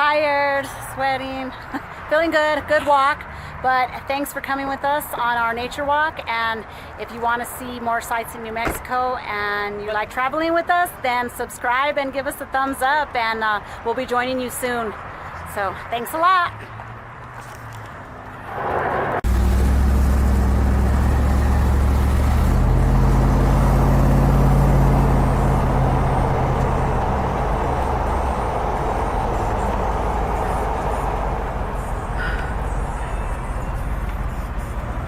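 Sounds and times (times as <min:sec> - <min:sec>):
road noise: 0:00.0 - 0:35.0
car engine accelerating: 0:18.9 - 0:35.0.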